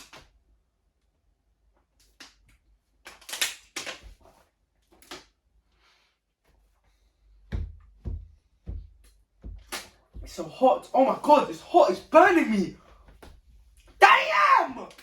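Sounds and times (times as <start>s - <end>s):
dull knocks: 7.5s - 10.4s.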